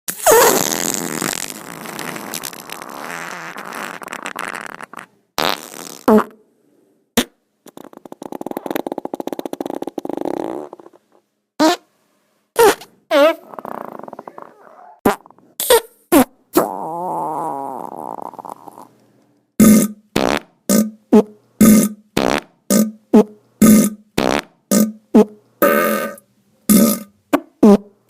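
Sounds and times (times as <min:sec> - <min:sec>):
farts: 0:00.1 - 0:06.4, 0:07.2 - 0:11.0, 0:11.6 - 0:11.8, 0:12.6 - 0:18.9, 0:19.6 - 0:28.0.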